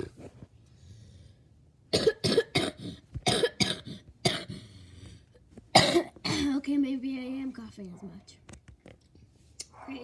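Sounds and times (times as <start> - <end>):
woman coughing: 1.9 - 4.6, 5.7 - 6.6.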